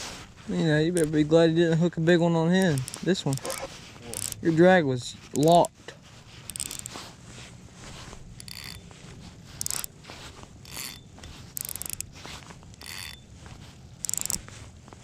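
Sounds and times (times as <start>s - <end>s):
fishing reel ratcheting: 0.9s - 1.2s, 2.6s - 4.4s, 5.4s - 5.7s, 6.4s - 7.0s, 8.3s - 8.9s, 9.5s - 9.9s, 10.6s - 13.2s, 14.0s - 14.5s.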